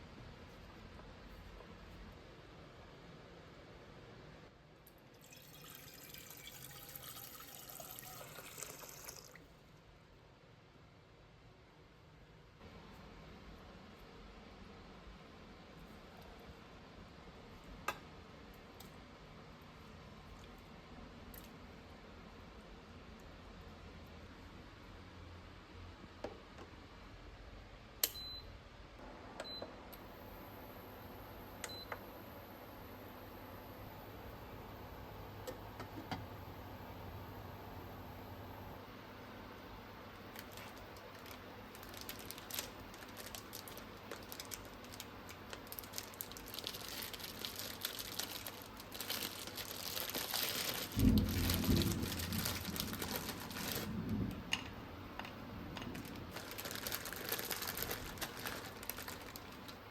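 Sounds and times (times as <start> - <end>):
water running from a tap: 5.2 - 9.4.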